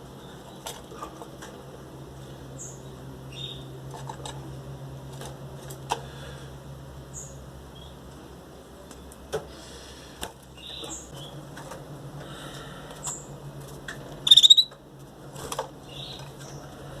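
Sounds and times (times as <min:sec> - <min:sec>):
canary chicks cheeping: 0:02.5 - 0:03.8, 0:07.0 - 0:08.2, 0:10.5 - 0:11.5, 0:12.4 - 0:14.9, 0:15.8 - 0:17.0.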